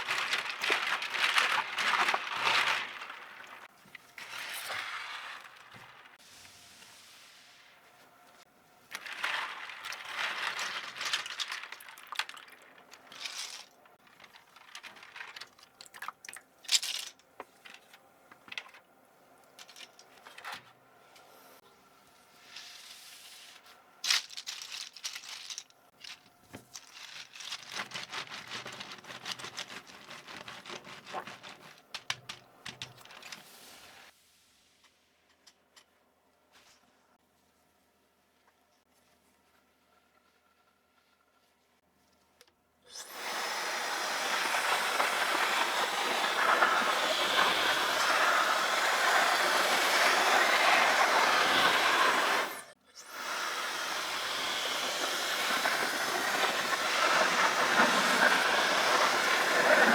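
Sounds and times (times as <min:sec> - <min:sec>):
scrubbing against plastic: 0:00.0 - 0:06.4, 0:24.2 - 0:34.1
plastic parts clicking: 0:24.1 - 0:33.5.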